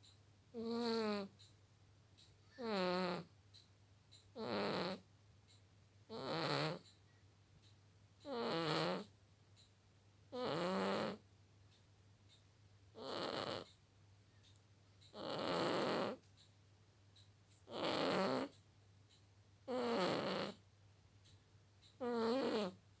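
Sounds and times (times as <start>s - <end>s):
cat snoring: 0.5s - 1.3s, 2.5s - 3.3s, 4.3s - 5.1s, 6.1s - 6.9s, 8.2s - 9.1s, 10.3s - 11.2s, 12.9s - 13.8s, 15.1s - 16.2s, 17.6s - 18.6s, 19.7s - 20.6s, 22.0s - 22.8s.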